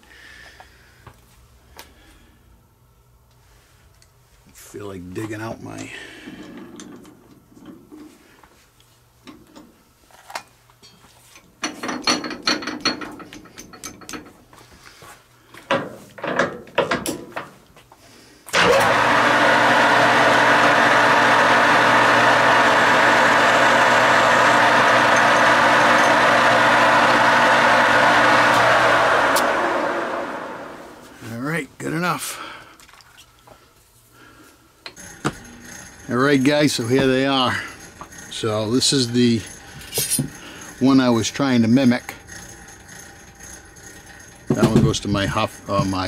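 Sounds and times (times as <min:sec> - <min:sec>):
tooling clicking and knocking: 0:10.4 - 0:14.4, 0:34.9 - 0:46.0
metal lathe running: 0:18.5 - 0:31.1, 0:35.0 - 0:46.0.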